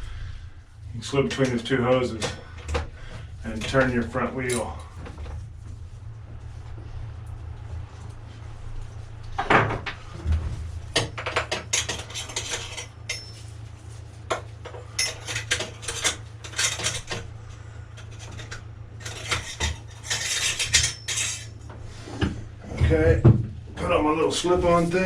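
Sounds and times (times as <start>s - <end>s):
steady low hum: 0.0s - 25.0s
metal pipe clinking and clanking: 11.0s - 13.5s, 14.3s - 17.3s, 18.0s - 21.6s.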